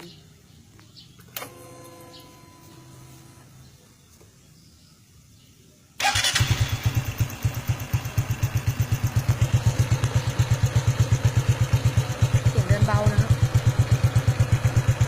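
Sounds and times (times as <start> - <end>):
motorcycle engine idling: 6.0 - 15.0.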